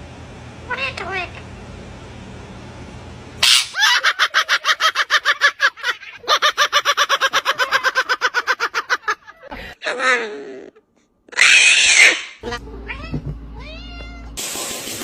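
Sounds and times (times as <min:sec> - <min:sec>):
bird harsh screech: 0:03.4 - 0:03.8, 0:11.4 - 0:12.4
bird clucking rapidly: 0:03.4 - 0:03.9.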